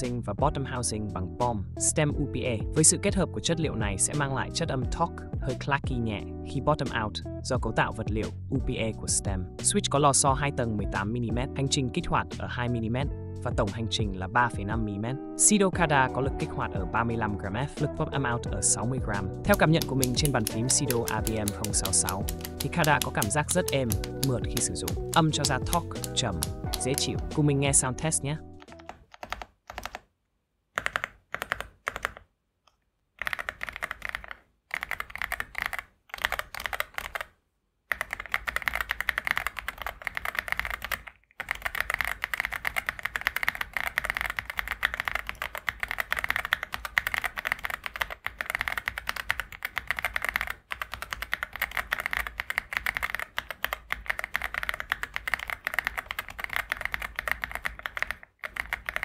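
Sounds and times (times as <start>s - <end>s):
typing on mechanical keyboard: 19.4s - 27.4s, 28.6s - 30.1s, 30.8s - 32.3s, 33.2s - 59.0s.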